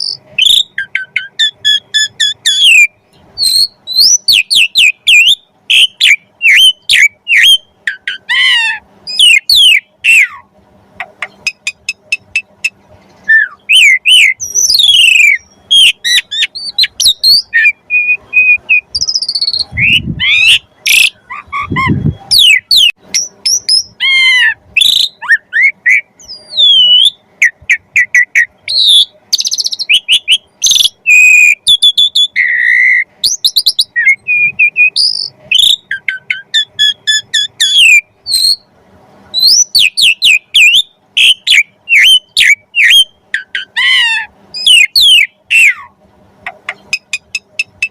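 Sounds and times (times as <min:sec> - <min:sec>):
starling singing: 0:00.0 - 0:38.7, 0:39.3 - 0:47.9
low rumbles: 0:18.3 - 0:22.4.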